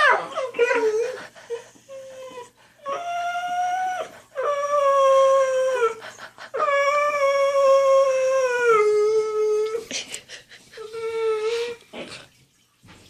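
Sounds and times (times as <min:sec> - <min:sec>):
dog whining: 0:00.0 - 0:09.9.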